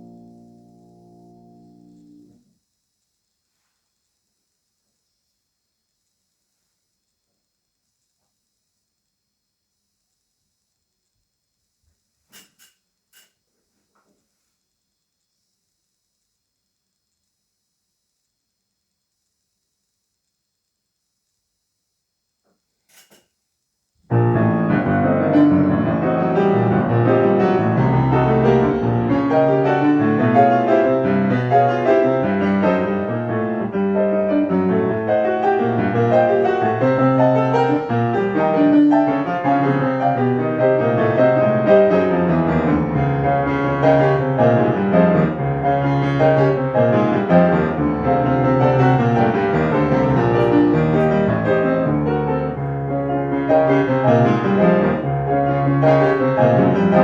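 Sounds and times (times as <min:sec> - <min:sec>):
solo classical piano: 0:00.0 - 0:02.4, 0:24.1 - 0:57.0.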